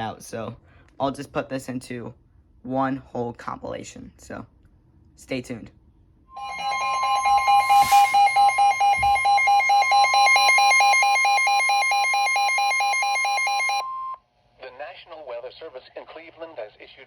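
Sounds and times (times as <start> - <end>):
steady alarm tone: 6.3 - 13.8
rapid beeping alarm tone: 6.3 - 14.1.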